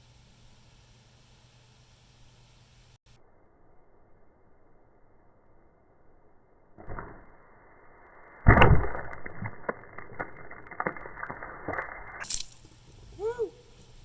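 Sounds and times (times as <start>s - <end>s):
loud sharp impact: 8.4s - 12.4s.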